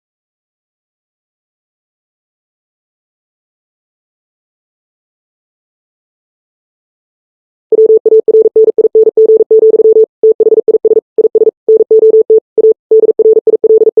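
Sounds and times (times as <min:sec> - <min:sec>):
electronic beeps like morse code: 0:07.7 - 0:14.0.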